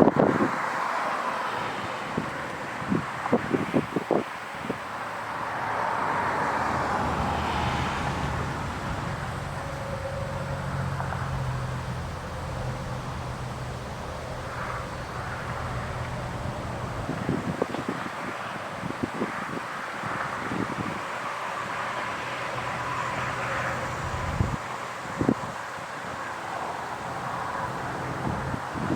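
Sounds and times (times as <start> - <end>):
rush of noise: 2.8 - 25.6
siren winding down: 6.5 - 17.6.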